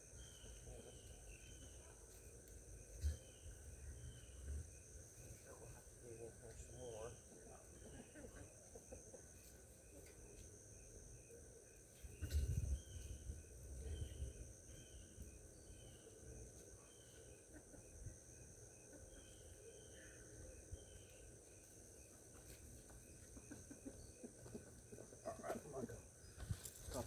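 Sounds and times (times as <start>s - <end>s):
bird chirping: 0.0s - 2.2s, 2.8s - 8.9s, 9.8s - 22.3s
insects droning: 0.0s - 27.0s.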